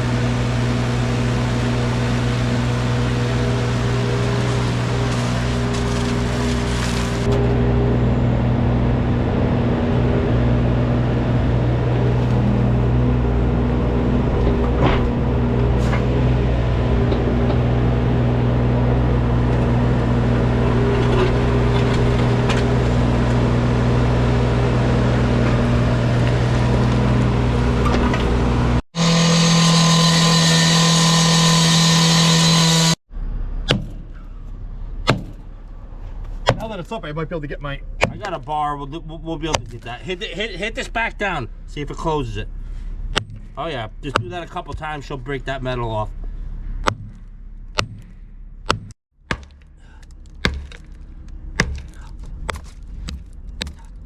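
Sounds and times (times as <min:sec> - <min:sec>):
diesel excavator engine running: 0:00.0 - 0:54.0
sharp knocks: 0:33.7 - 0:34.2, 0:35.0 - 0:35.5, 0:38.0 - 0:38.4, 0:43.2 - 0:44.9, 0:46.8 - 0:51.0, 0:51.6 - 0:53.9.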